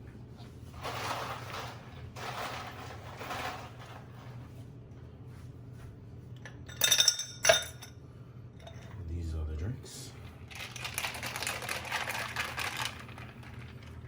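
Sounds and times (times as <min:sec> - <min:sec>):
ice cubes clattering into a glass: 0:10.5 - 0:13.7.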